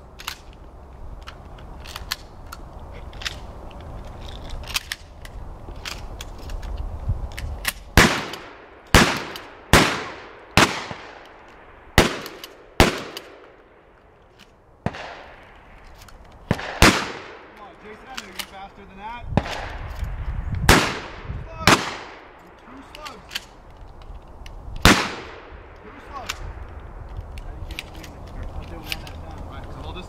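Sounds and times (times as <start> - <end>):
shotgun shots echoing: 8.0 - 13.8, 14.8 - 15.8, 16.4 - 18.4, 19.4 - 19.9, 20.7 - 22.4, 24.8 - 26.5.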